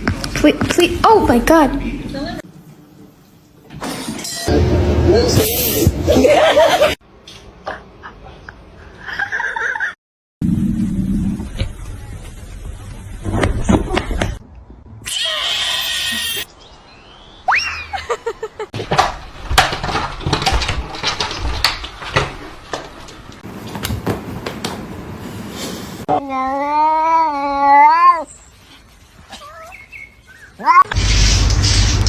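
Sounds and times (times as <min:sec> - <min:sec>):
cats meowing and yowling: 0:26.2 - 0:28.3, 0:30.5 - 0:30.9.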